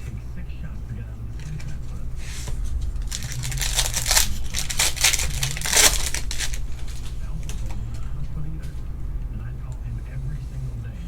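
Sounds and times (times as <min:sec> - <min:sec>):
steady low hum: 0:00.0 - 0:11.0
foil wrapper crinkling and tearing: 0:01.4 - 0:07.8.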